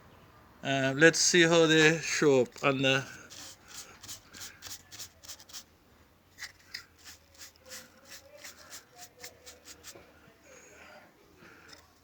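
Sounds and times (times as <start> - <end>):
hand rubbing wood surface: 2.4 - 5.7, 6.4 - 10.0.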